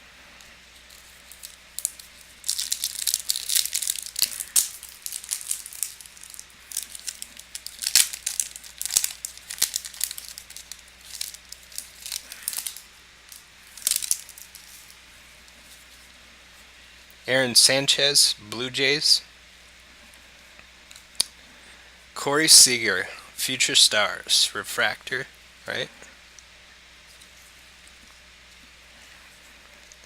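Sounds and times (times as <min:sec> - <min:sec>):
foil wrapper tearing and crinkling: 0:00.9 - 0:15.0.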